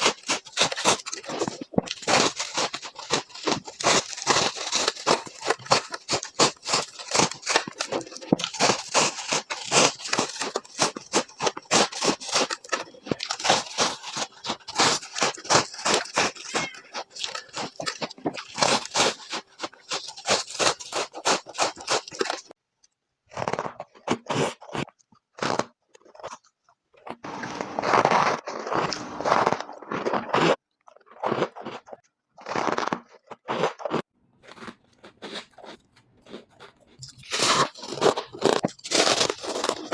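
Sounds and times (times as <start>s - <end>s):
ice crunching: 0.0s - 22.6s, 27.1s - 39.9s.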